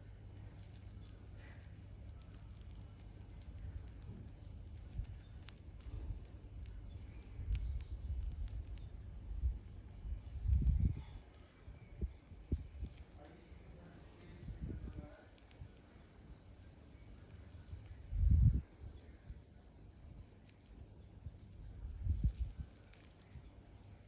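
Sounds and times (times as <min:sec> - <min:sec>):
small clicks: 0:00.0 - 0:11.5
hands crushing soft material: 0:00.0 - 0:24.0.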